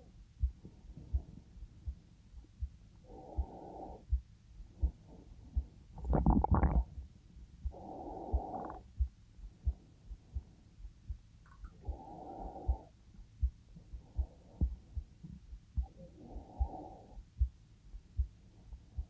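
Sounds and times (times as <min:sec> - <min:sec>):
heartbeat thumps: 0:00.0 - 0:19.0
slow breaths: 0:03.0 - 0:06.0, 0:07.6 - 0:10.7, 0:11.6 - 0:17.6.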